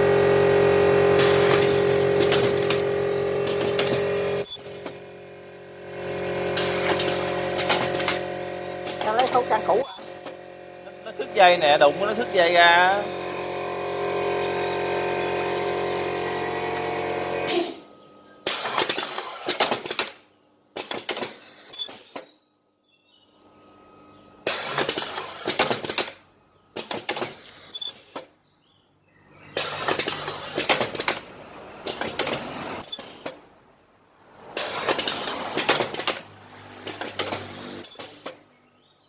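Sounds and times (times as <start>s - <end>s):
machine humming: 0.0s - 17.2s, 32.8s - 33.7s, 37.8s - 38.6s
machine mechanical clattering: 29.6s - 33.7s, 34.6s - 38.6s.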